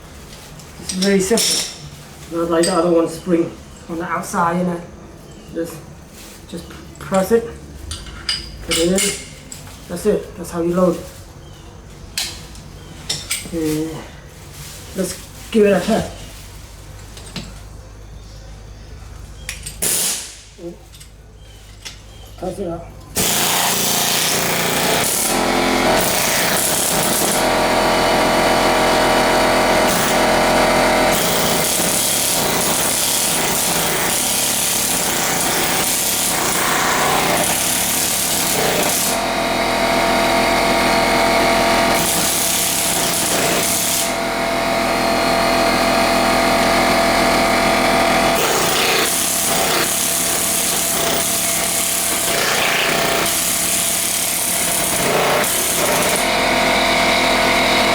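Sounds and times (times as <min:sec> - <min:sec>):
air hammer chiselling concrete: 0:23.2 - 0:57.9.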